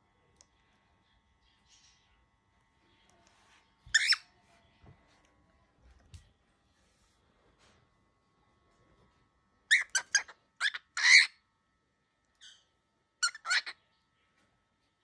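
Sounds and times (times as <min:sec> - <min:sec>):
baby cockatiel squawking: 0:03.9 - 0:04.2, 0:09.7 - 0:11.4, 0:13.2 - 0:13.8.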